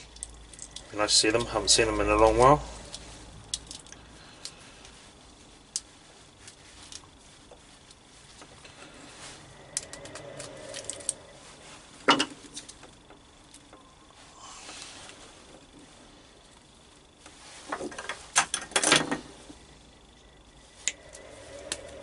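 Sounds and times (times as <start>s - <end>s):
small tools clicking and clattering: 17.7s - 19.2s.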